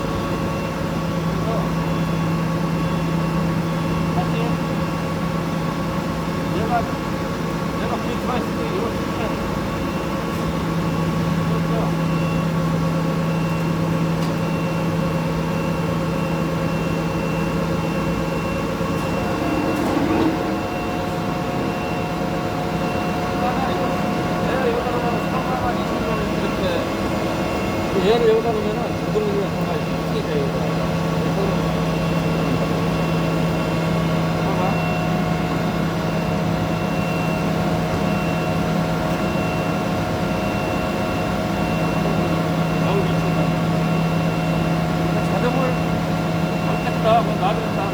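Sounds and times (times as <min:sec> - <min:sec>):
higher steady machine tone: 0:00.0 - 0:47.9
industrial machine humming: 0:00.0 - 0:47.9
faint high whine: 0:14.4 - 0:37.4.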